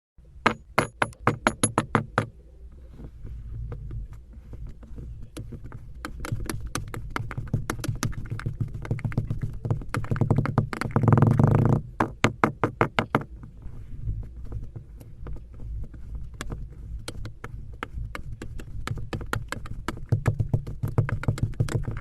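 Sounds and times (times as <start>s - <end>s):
sand crunching rumble: 13.2s - 21.2s.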